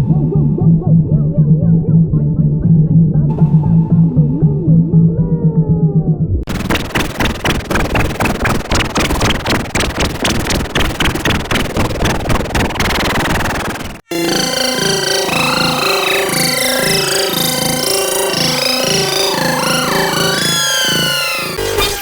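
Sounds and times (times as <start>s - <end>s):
rapid clicks and crackles: 6.5s - 14.1s
falling pitch glides: 6.6s - 22.0s.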